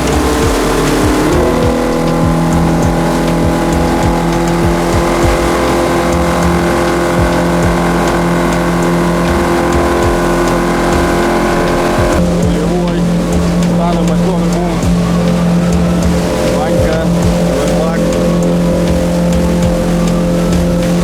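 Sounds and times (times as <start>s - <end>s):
boat engine running: 0.0s - 21.0s
sea wash: 0.0s - 21.0s
wind: 0.0s - 21.0s.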